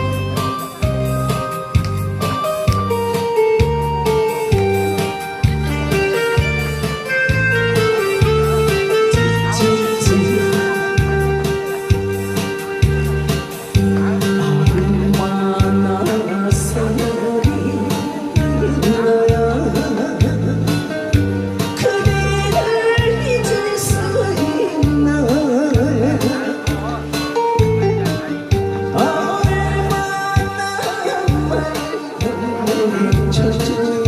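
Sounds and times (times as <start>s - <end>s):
amplified live music: 0.0s - 34.0s
held melody notes: 0.0s - 34.0s
person singing: 7.8s - 34.0s.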